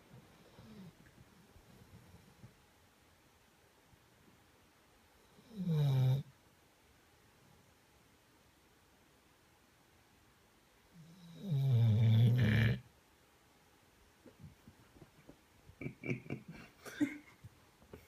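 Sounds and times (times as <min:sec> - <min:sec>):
dog snoring: 0:00.3 - 0:01.0, 0:05.2 - 0:06.3, 0:10.9 - 0:12.8.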